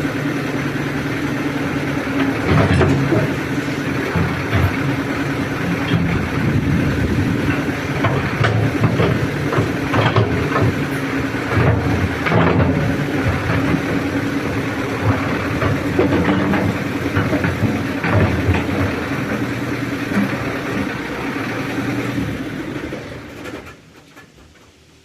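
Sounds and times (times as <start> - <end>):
excavator diesel engine running: 0.0 - 25.0
short metal knocks: 2.2 - 19.5.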